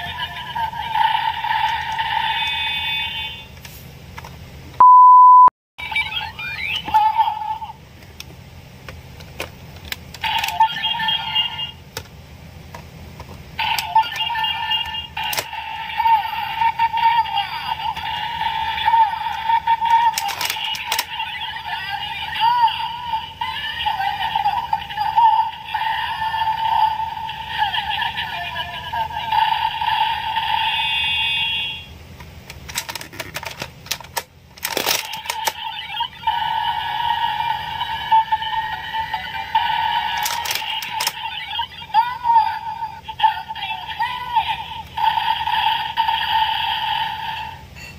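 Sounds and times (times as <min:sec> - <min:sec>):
toy electronic sound effects and voice: 0:00.0 - 0:03.6, 0:05.8 - 0:07.8, 0:10.1 - 0:11.8, 0:13.6 - 0:31.9, 0:32.7 - 0:47.6
plastic clicks: 0:20.1 - 0:21.1, 0:32.5 - 0:35.6, 0:40.2 - 0:41.2.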